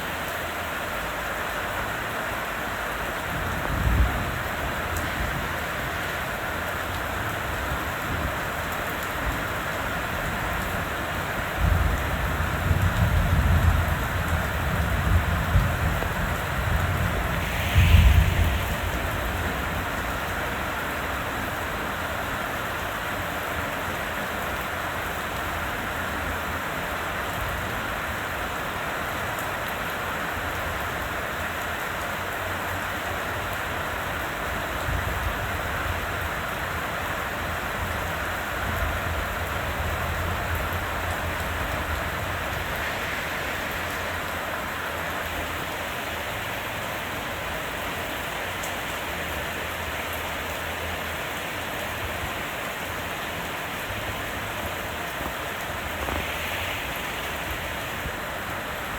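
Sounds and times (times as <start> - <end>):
heavy rain pouring: 0.0 - 58.9.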